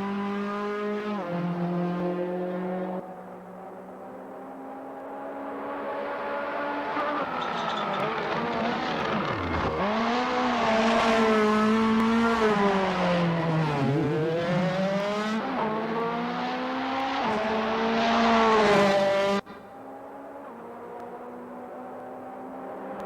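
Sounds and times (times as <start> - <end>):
racing car engine revving: 4.1 - 19.4.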